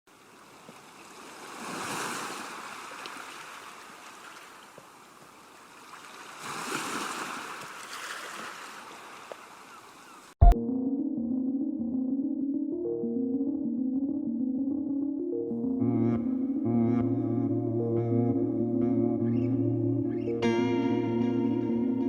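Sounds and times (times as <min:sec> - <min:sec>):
ocean surf breaking on beach: 0:00.2 - 0:04.6.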